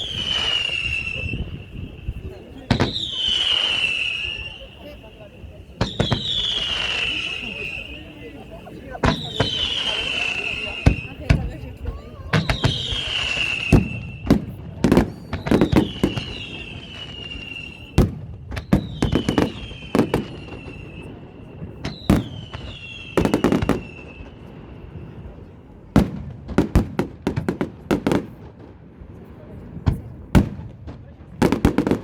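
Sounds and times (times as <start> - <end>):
whistling firework shells: 0.0 - 11.5, 12.3 - 26.1
fireworks bangs and cracks: 0.0 - 32.0.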